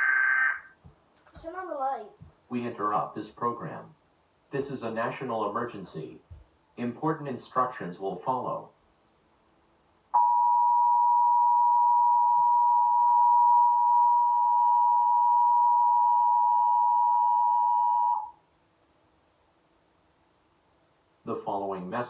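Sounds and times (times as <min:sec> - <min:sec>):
two-tone alarm: 0:10.2 - 0:18.4.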